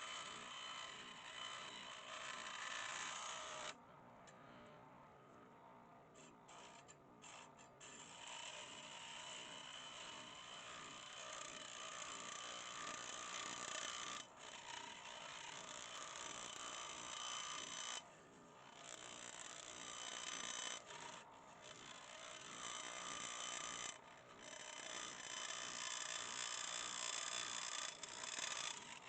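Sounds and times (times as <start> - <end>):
scroll saw cutting: 0.0 - 3.8, 18.8 - 29.0.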